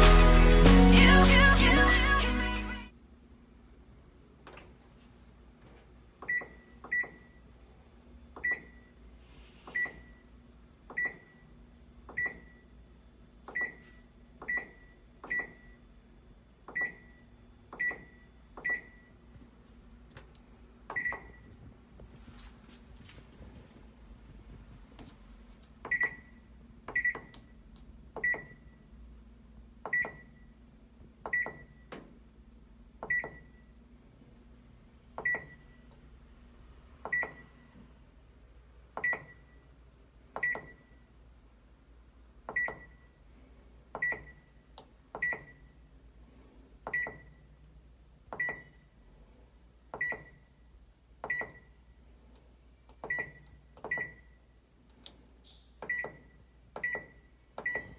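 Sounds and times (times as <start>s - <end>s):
high beeps of washing machine: 6.2s - 7.5s, 8.4s - 9.0s, 9.7s - 10.3s, 10.9s - 11.5s, 12.1s - 12.7s, 13.5s - 15.8s, 16.7s - 19.2s, 20.9s - 21.5s, 25.8s - 27.5s, 28.2s - 28.9s, 29.8s - 30.6s, 31.2s - 32.0s, 33.0s - 33.7s, 35.2s - 35.9s, 37.0s - 37.7s, 39.0s - 39.7s, 40.4s - 41.1s, 42.5s - 43.2s, 44.0s - 44.6s, 45.2s - 45.9s, 46.9s - 47.6s, 48.3s - 48.9s, 50.0s - 50.6s, 51.2s - 51.8s, 53.0s - 54.5s, 55.8s - 57.9s.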